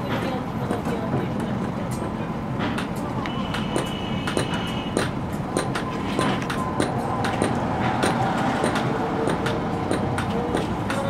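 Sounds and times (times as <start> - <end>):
hammer striking metal: 3.5 - 11.0.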